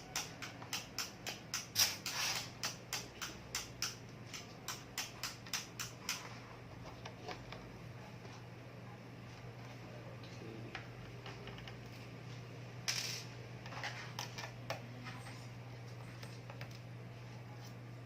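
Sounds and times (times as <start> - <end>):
screwdriver clicking: 0.1 - 6.2.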